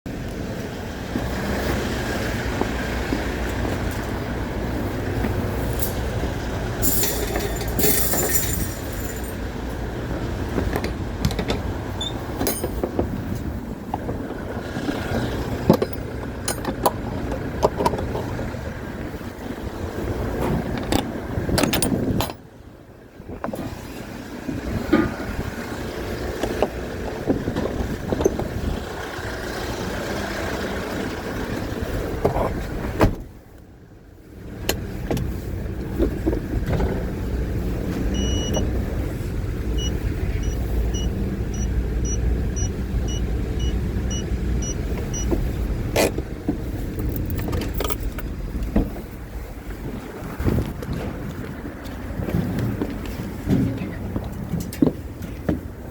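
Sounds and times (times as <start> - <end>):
vehicle engine rumbling: 0.1 - 55.9
short high beeps: 39.8 - 45.3.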